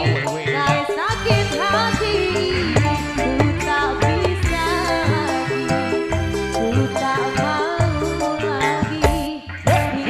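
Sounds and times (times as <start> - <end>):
live band dance music: 0.0 - 10.0.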